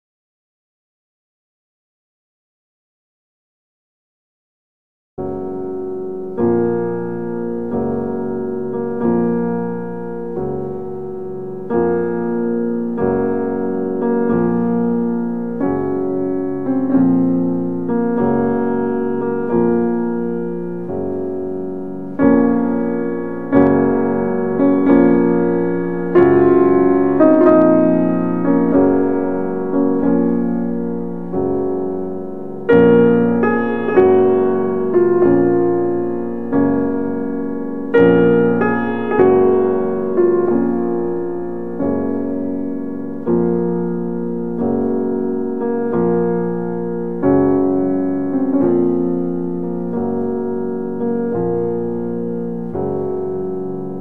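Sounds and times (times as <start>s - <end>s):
slow piano chords: 5.2s - 54.0s.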